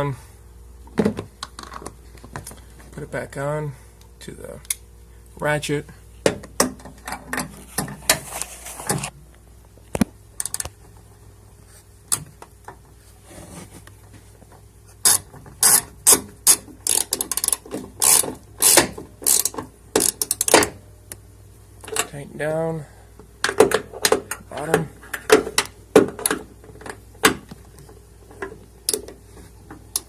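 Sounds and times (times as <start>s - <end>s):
socket ratchet clicking: 15.1s - 20.7s.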